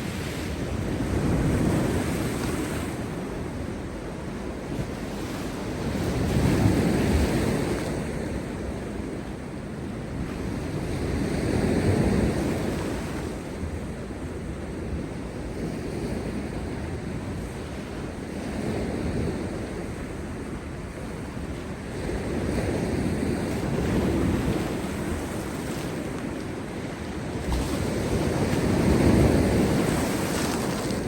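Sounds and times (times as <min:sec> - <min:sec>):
sea waves crashing on rocks: 0:22.0 - 0:31.0.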